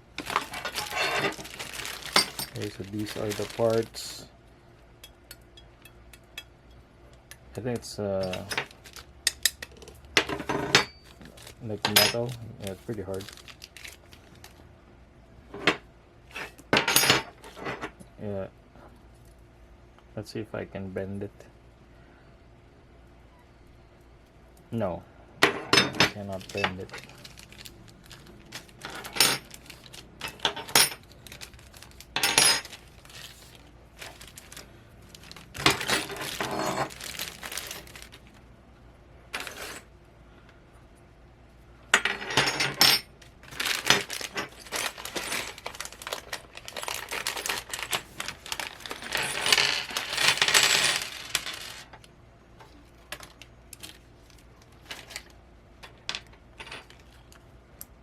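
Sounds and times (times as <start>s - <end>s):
metal parts clinking: 0.2s - 4.2s, 8.2s - 14.0s, 25.5s - 34.6s, 35.2s - 38.2s, 42.0s - 52.0s.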